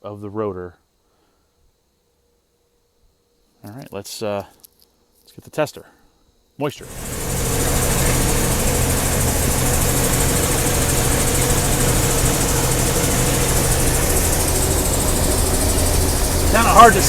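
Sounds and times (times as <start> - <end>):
farm machinery engine running: 6.8 - 17.0.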